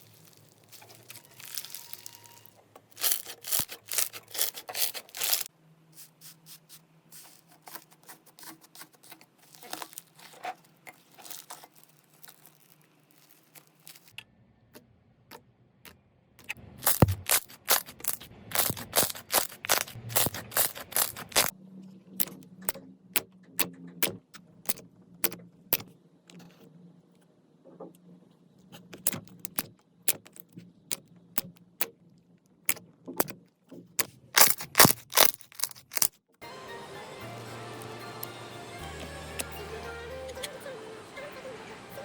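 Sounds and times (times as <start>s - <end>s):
slime crackling and popping: 0.0s - 5.5s, 9.4s - 10.3s, 11.0s - 14.2s, 16.8s - 21.5s, 34.0s - 36.2s.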